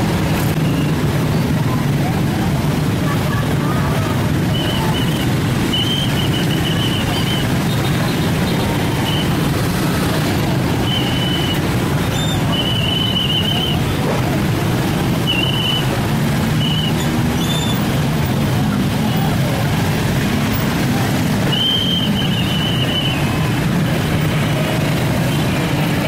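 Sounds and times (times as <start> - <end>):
road traffic rumble: 0.0 - 26.0
high whistle blasts: 21.5 - 23.4.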